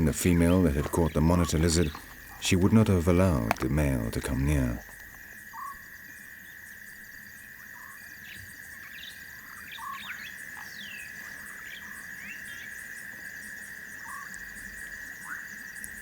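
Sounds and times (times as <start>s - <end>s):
short chirping calls: 0.0s - 5.2s
cricket trill: 0.0s - 16.0s.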